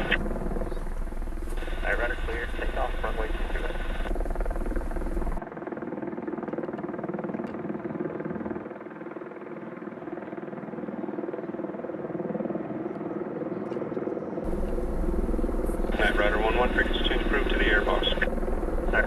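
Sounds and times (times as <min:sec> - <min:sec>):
pulsing rotor thrum: 0:00.0 - 0:05.4, 0:14.5 - 0:19.0.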